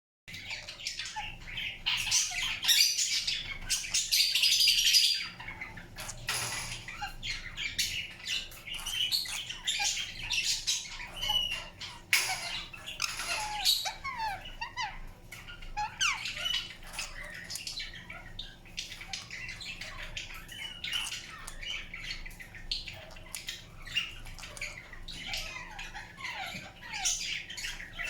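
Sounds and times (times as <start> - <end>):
soft bird chirps: 0.3 - 28.0
parakeet grinding beak: 12.0 - 14.9.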